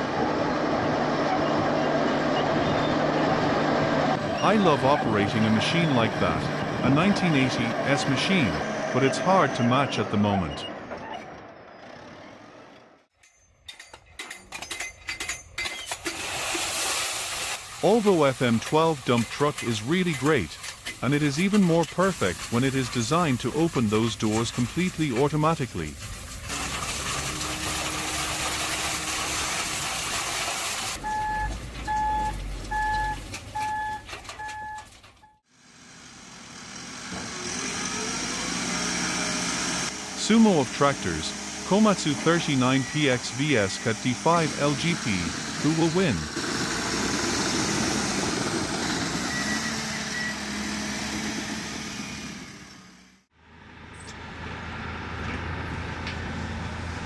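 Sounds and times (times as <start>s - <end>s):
machinery noise: 0.0s - 12.8s, 17.8s - 33.4s, 35.8s - 53.2s
sharp clanks and knocks: 13.1s - 16.2s
reversing alarm beeping: 31.0s - 35.4s, 41.8s - 44.4s.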